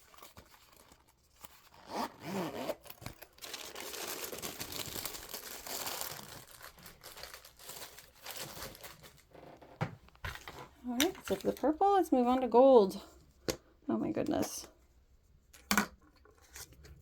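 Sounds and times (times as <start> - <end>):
plastic packaging crinkling: 2.7 - 9.6, 10.4 - 12.0.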